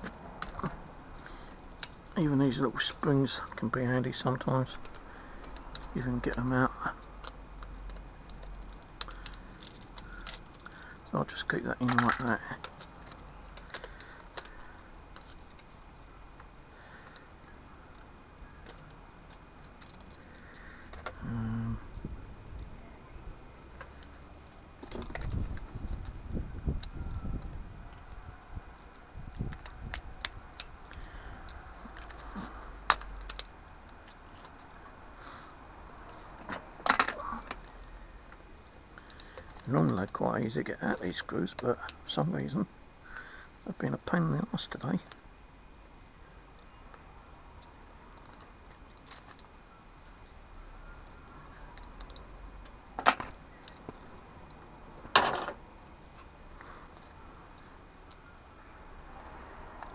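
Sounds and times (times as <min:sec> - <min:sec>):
small clicks of parts: 0:00.0 - 0:22.1, 0:23.5 - 0:45.8, 0:46.4 - 0:59.9
loud clatters of parts: 0:55.0 - 0:55.6.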